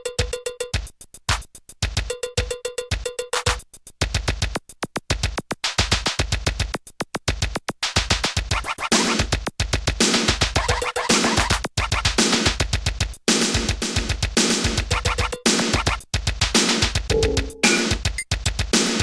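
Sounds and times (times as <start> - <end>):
electronic music with fast beat: 0.0 - 19.0.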